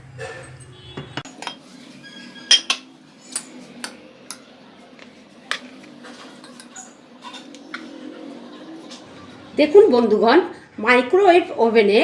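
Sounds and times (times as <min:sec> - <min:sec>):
spoon clinking against bowl: 0:01.3 - 0:04.5.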